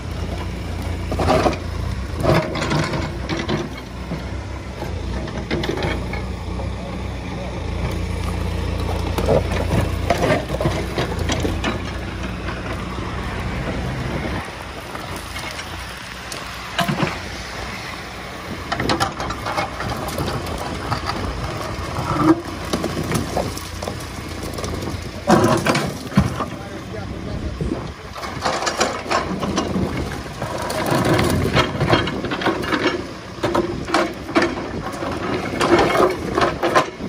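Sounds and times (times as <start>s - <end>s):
diesel engine idling: 0.0s - 37.0s
knocks and clanks: 1.1s - 6.3s, 8.8s - 12.7s, 16.7s - 17.2s, 18.7s - 26.7s, 28.2s - 37.0s.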